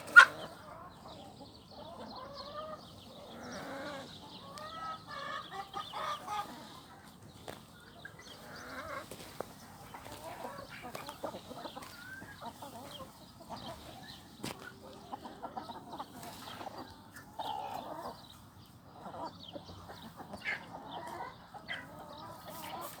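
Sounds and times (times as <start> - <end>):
chickens clucking: 0.0 - 23.0.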